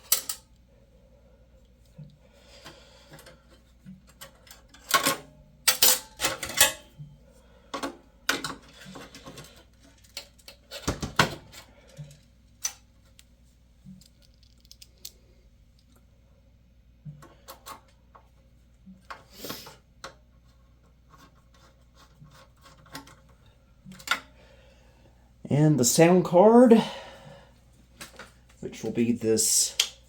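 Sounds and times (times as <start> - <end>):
computer parts clicking and clattering: 4.0 - 6.8.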